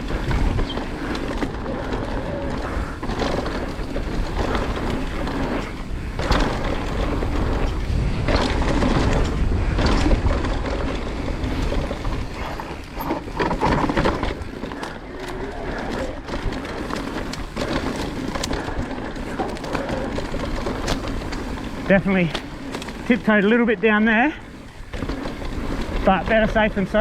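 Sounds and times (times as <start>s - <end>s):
tyres rolling over dirt and rocks: 0.0s - 27.0s
wind buffeting microphone: 0.0s - 27.0s.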